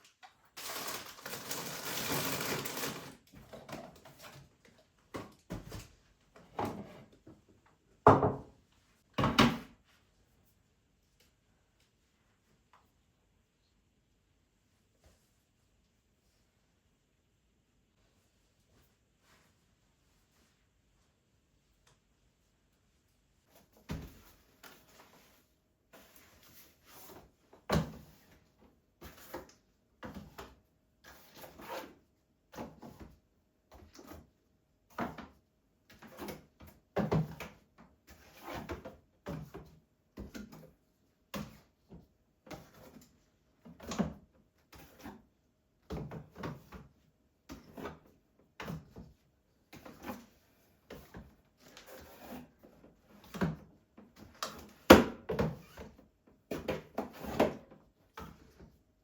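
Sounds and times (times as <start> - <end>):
objects knocking and clunking: 2.4 - 8.6.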